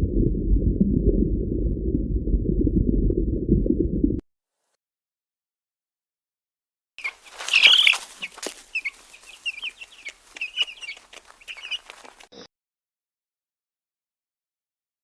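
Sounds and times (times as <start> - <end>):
chickens chirping: 7.0 - 12.3
rustling: 7.0 - 12.3.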